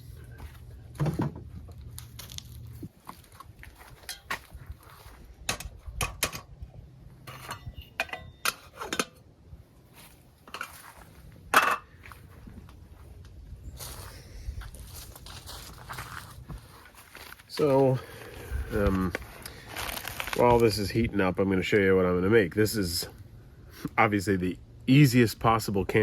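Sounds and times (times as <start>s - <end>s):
camp cookware clinking: 4.0s - 4.5s, 5.4s - 6.6s, 7.2s - 9.3s, 10.4s - 10.9s, 11.5s - 12.1s
metal clatter: 7.2s - 9.2s.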